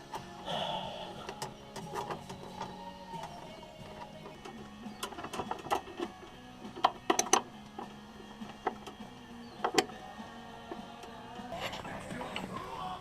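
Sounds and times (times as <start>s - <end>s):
faint background music: 0.0s - 13.0s
sharp clicks and knocks: 6.8s - 9.0s.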